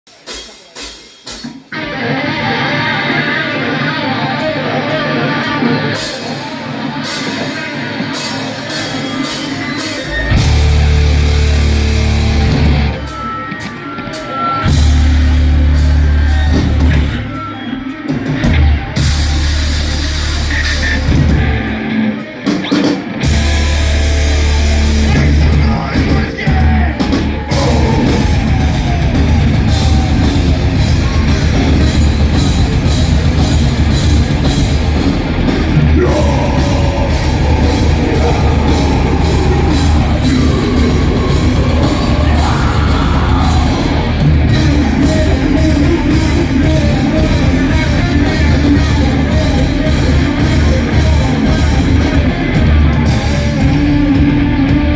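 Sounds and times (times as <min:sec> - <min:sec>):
heavy metal band playing: 0:00.1 - 0:54.9
yelled vocals: 0:23.4 - 0:54.9.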